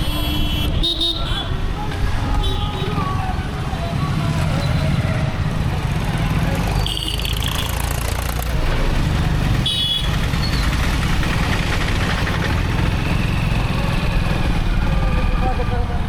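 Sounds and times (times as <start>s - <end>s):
motorcycle running: 3.2s - 16.0s.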